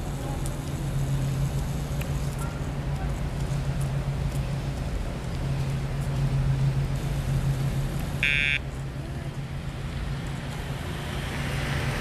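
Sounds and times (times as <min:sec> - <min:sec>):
engine drone: 0:00.0 - 0:12.0
high electronic beep: 0:08.2 - 0:08.6.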